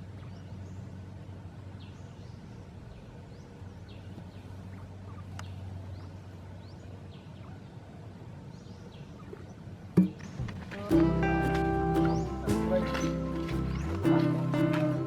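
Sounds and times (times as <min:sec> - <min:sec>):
low outdoor rumble: 0:00.0 - 0:15.0.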